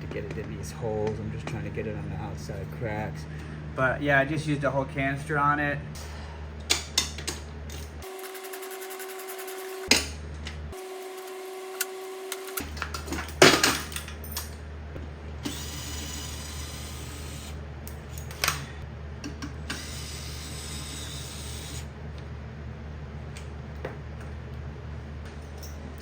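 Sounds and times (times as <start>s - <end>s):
power drill running: 8.0s - 9.9s, 10.8s - 12.7s, 15.4s - 17.6s, 19.6s - 21.9s.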